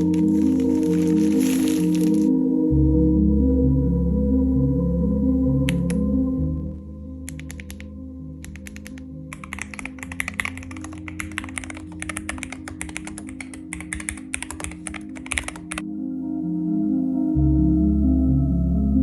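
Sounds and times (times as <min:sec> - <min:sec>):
keyboard typing: 0:00.0 - 0:02.3, 0:05.7 - 0:06.0, 0:07.3 - 0:15.8.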